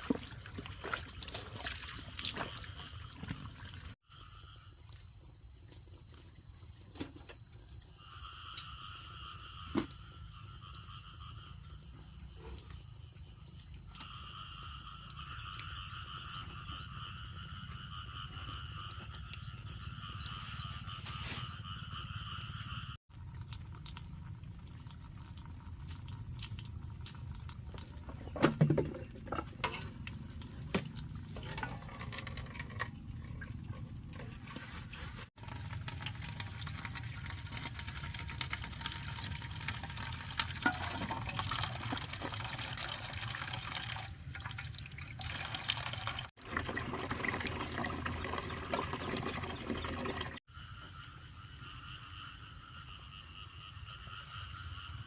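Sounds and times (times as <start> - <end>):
frogs calling: 7.8 - 34.4, 50.4 - 55.0.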